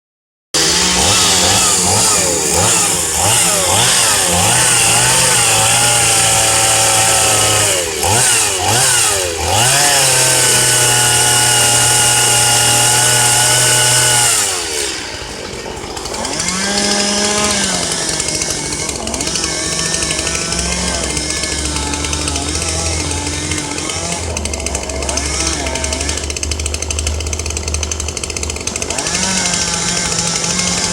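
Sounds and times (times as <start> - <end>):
chainsaw revving: 0.6 - 30.9.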